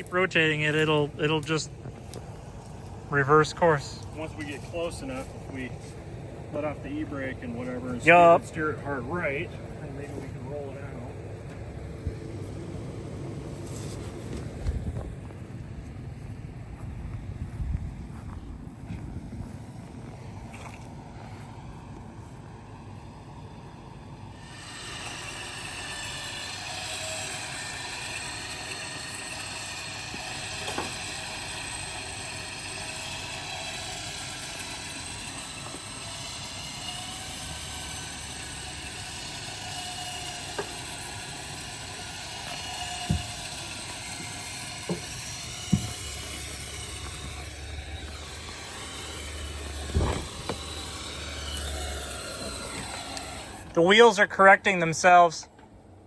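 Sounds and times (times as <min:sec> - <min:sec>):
winch running: 0:00.0 - 0:16.4, 0:19.3 - 0:55.8
knocks and clunks from car: 0:45.7 - 0:46.0.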